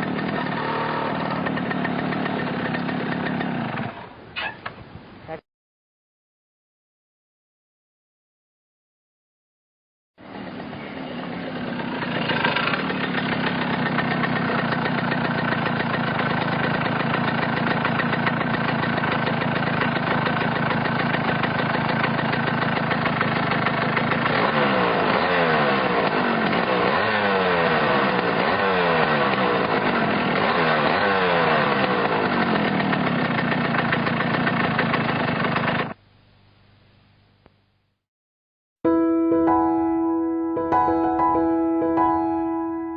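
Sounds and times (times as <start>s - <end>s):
motorcycle engine idling and revving: 0.0s - 4.6s, 10.2s - 36.0s.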